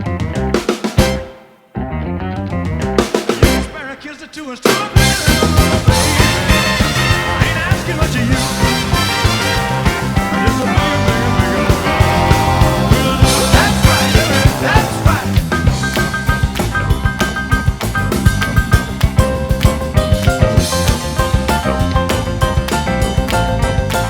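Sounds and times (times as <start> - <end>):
bass line: 0.0 - 4.0, 4.7 - 24.0
drum kit steady beat: 0.4 - 1.4, 3.0 - 3.8, 4.6 - 24.0
electric guitar: 5.0 - 24.0.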